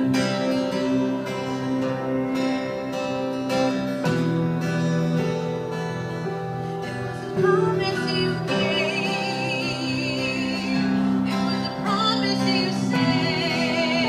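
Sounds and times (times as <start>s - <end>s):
strummed acoustic guitar: 0.0s - 14.0s
person singing: 7.0s - 14.0s.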